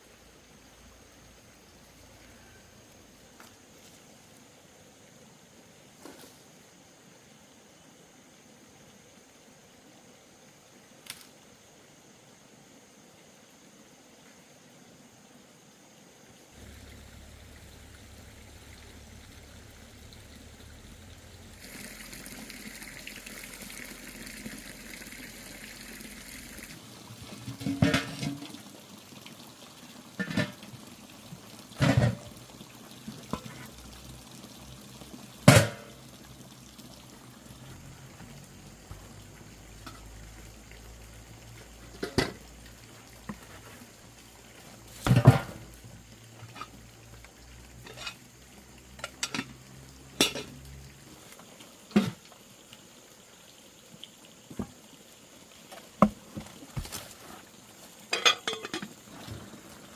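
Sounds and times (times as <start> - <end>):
water pouring: 16.6 - 59.9.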